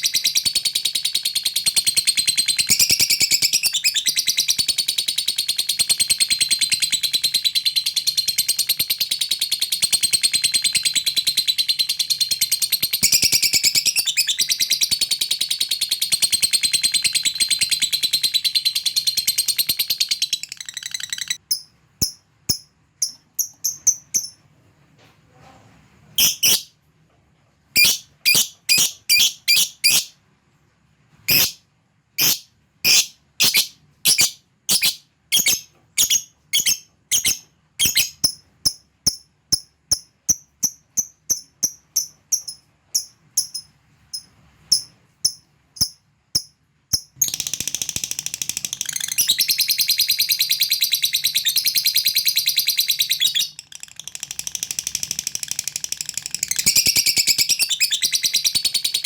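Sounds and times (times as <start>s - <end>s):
lovebird chattering trill: 0.0s - 24.4s, 26.2s - 26.7s, 27.8s - 30.1s, 31.3s - 31.6s, 32.2s - 59.0s
short sharp bird chirps: 26.2s - 26.7s, 27.8s - 30.2s, 31.3s - 31.6s, 32.2s - 38.2s.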